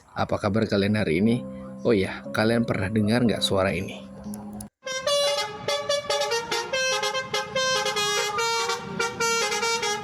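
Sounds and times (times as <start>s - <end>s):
musical air horn melody: 4.8s - 10.0s.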